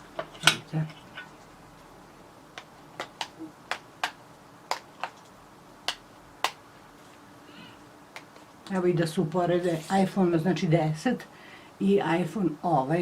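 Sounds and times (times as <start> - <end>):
phones tapping together: 2.5 - 6.6.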